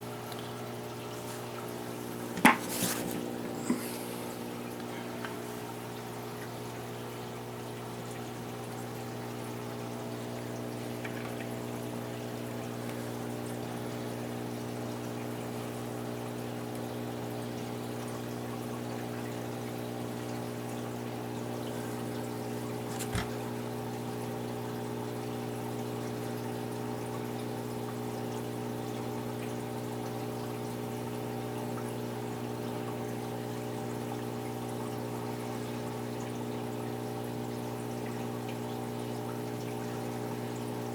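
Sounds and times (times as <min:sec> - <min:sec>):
water trickling into tank: 0:00.0 - 0:40.9
filter low hum: 0:00.1 - 0:18.1.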